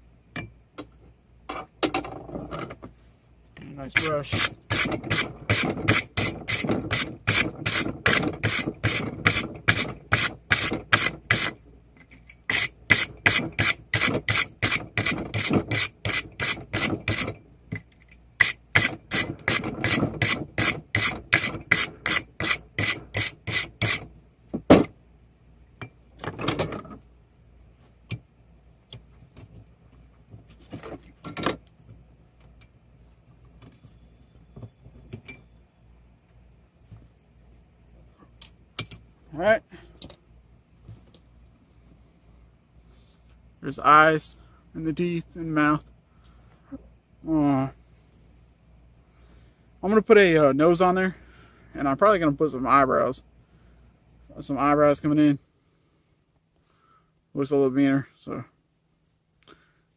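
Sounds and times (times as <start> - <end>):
wire brush scrubbing metal: 3.8 - 11.6, 12.4 - 17.4, 18.4 - 24.0.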